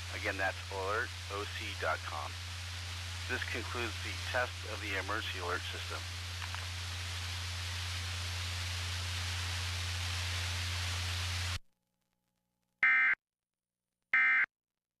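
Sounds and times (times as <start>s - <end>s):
broadcast static hiss: 0.0s - 11.6s.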